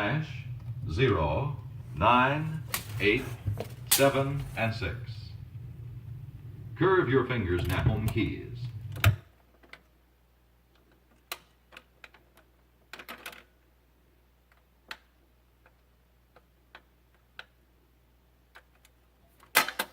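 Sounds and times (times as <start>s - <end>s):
faint low hum: 0.0s - 9.2s
vinyl record clicks and pops: 1.6s - 5.1s.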